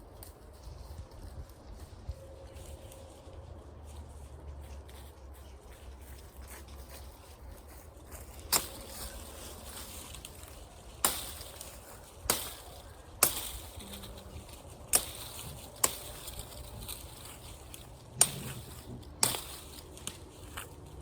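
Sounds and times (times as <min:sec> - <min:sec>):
machete chopping branches: 0:08.4 - 0:20.8.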